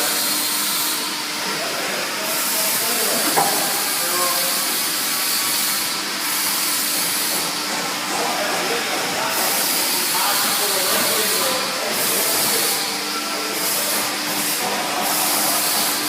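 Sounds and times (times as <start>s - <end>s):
hydraulic baling press hissing: 2.6s - 5.0s.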